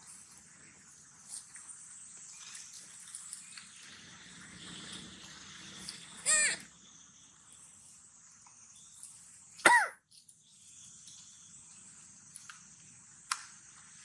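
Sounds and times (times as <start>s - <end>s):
baby monkey crying: 6.2s - 6.7s.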